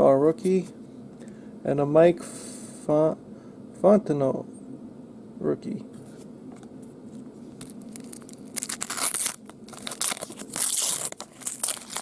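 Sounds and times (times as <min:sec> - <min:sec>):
wrapper tearing and crinkling: 0:07.6 - 0:12.0.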